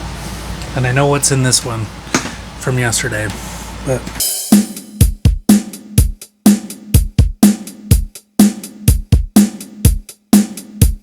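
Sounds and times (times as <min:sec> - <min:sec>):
music with drum beat: 0:04.2 - 0:11.0.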